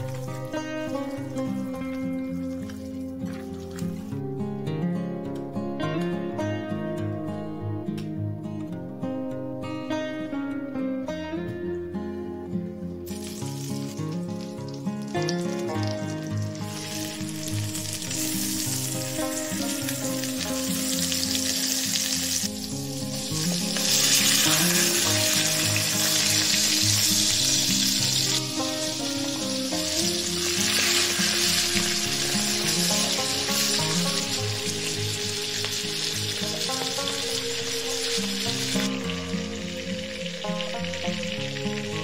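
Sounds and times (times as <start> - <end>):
food sizzling in a pan: 0.0 - 4.2, 13.0 - 42.0
background music: 0.0 - 42.0.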